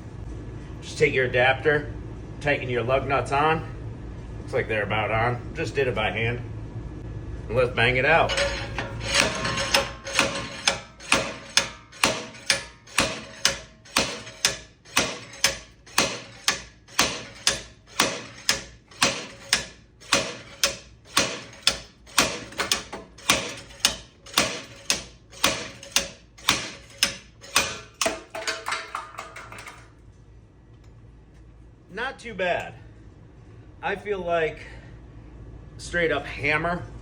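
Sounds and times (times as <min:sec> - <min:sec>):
slide hammer metal impacts: 0:08.1 - 0:29.9.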